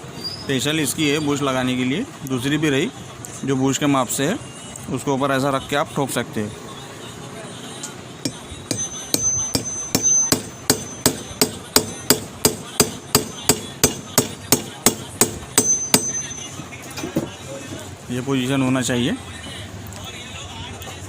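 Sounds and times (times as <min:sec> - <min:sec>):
hammer striking metal: 0:08.3 - 0:16.5.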